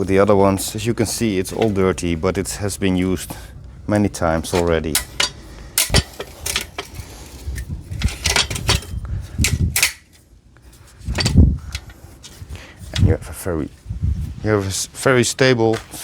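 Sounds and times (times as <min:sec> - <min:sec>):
metal stand legs clicking and rattling: 0:04.4 - 0:13.1.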